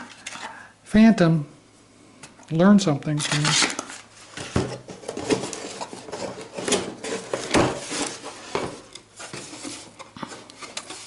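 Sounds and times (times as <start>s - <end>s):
packaging rustling: 3.2s - 11.0s.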